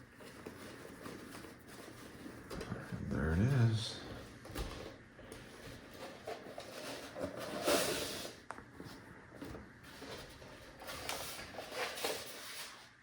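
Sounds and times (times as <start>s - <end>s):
foam packaging rustling: 9.9s - 13.0s.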